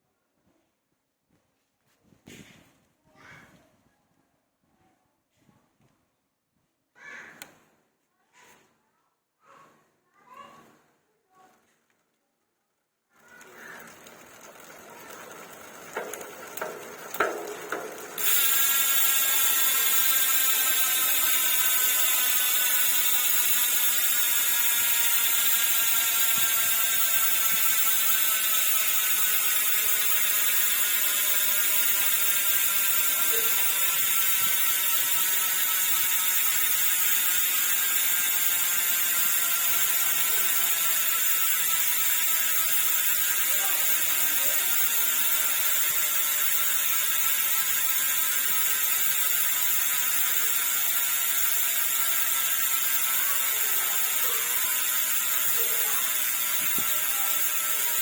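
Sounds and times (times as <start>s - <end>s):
bicycle freehub ratcheting buzz: 13.2s - 58.0s.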